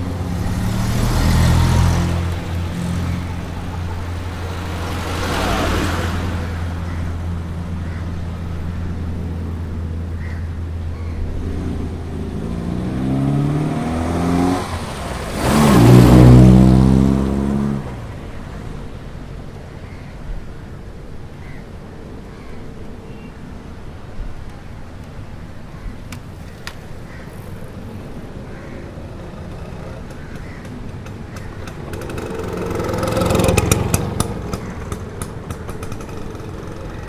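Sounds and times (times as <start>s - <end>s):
engine revving: 0.0s - 7.2s, 11.3s - 18.0s, 31.4s - 37.0s
vehicles passing: 0.0s - 37.0s.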